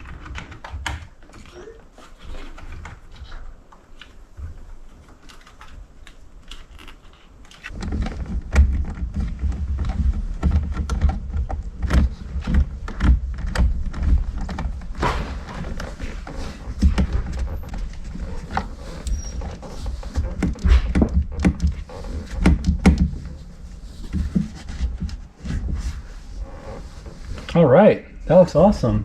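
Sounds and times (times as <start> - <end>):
heavy knocks: 19.5 - 25.4.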